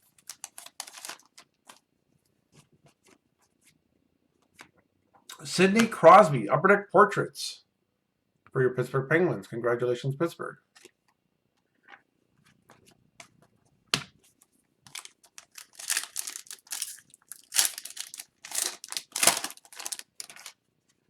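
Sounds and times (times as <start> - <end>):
foil pack tearing and crinkling: 0.0 - 1.8, 14.9 - 20.6.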